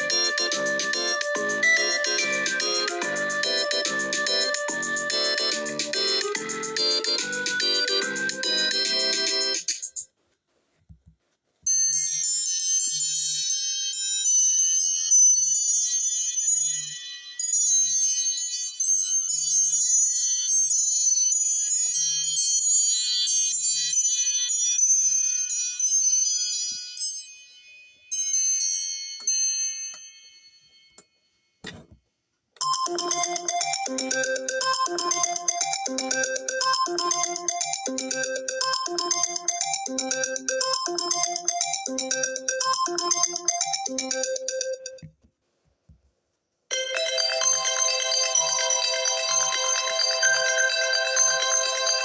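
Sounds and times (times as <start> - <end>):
high-pitched chiming ringtone: 0.0 - 10.0, 32.6 - 45.0, 46.7 - 52.0
brief knock: 31.6 - 32.0.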